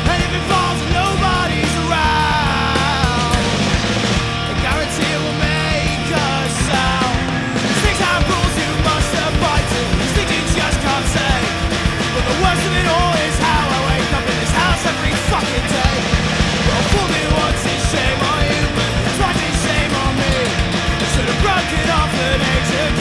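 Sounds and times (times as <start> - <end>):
pop-punk band playing: 0.0 - 23.0.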